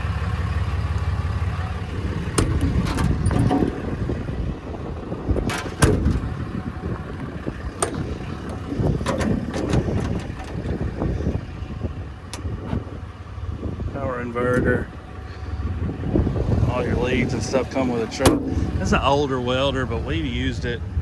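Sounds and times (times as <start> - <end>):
engine running: 0.0 - 21.0
sharp clicks and knocks: 2.2 - 4.2, 5.3 - 11.4, 12.3 - 14.7, 18.2 - 19.0.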